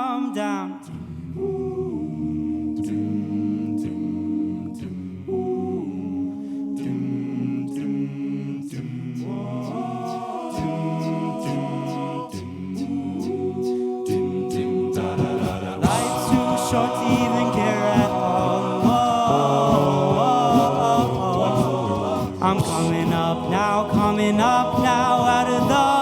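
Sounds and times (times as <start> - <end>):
male group singing wordless chords: 0.0 - 26.0
vocal percussion beat: 8.6 - 26.0.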